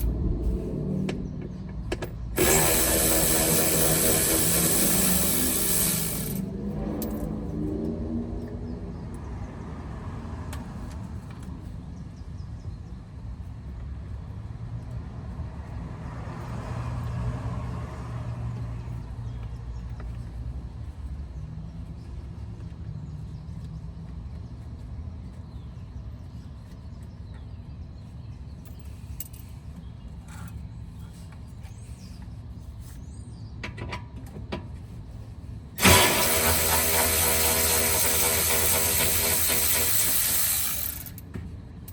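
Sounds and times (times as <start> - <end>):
low steady rumble: 0.0 - 7.6
cordless ratchet whirring: 2.4 - 6.5, 35.8 - 41.2.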